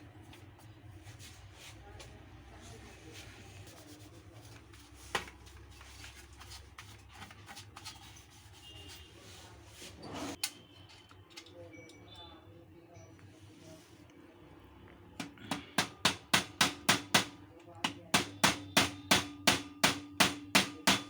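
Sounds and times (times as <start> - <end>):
clicks and rubbing of objects: 3.1 - 8.6.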